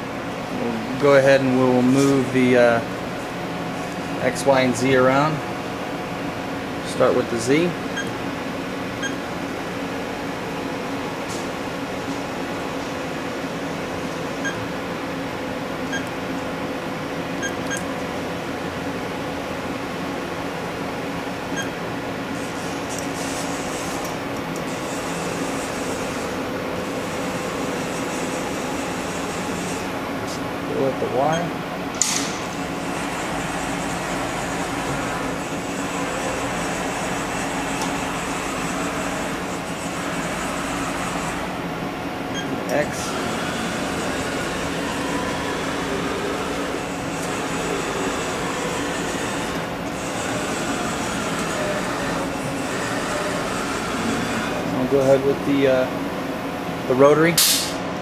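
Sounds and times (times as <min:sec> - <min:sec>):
machining center humming: 0:00.0 - 0:58.0
high machine whir: 0:21.5 - 0:56.0.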